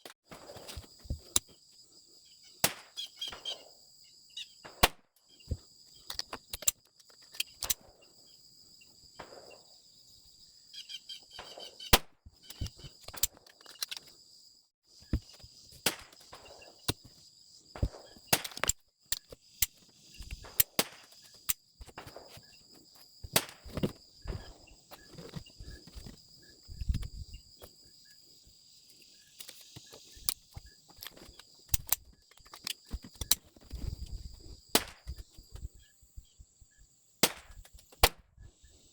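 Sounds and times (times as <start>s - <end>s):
gun clicks: 6.1s - 7.9s.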